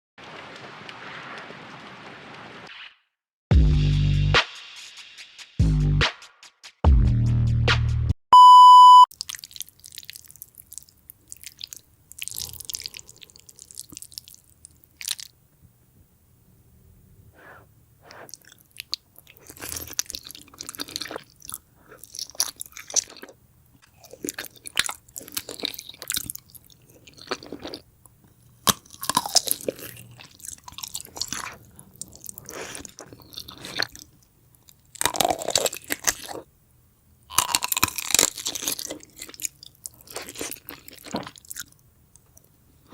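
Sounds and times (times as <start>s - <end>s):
person biting and chewing food: 9.1s - 15.4s, 18.0s - 36.5s, 37.3s - 42.5s.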